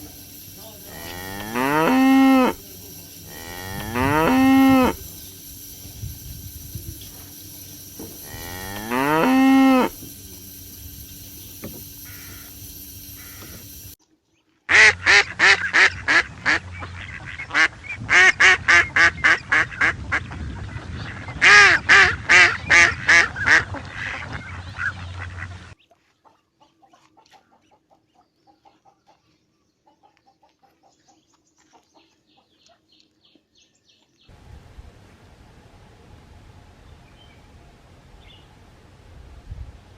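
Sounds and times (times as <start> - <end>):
waterfowl calling: 11.6 - 13.7, 14.7 - 20.3, 21.1 - 27.8.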